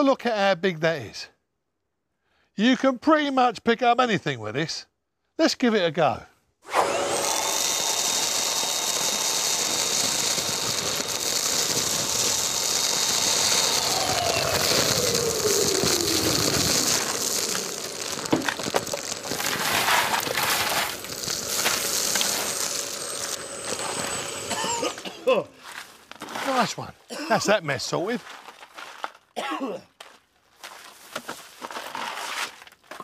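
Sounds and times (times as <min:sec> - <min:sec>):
vacuum cleaner whining: 0:06.7 - 0:25.8
debris clattering through hose: 0:06.8 - 0:25.1.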